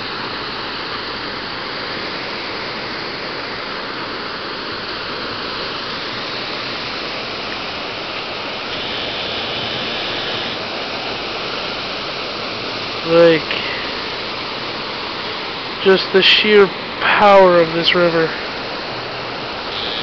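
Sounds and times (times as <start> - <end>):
fast river rushing: 0.0 - 20.0.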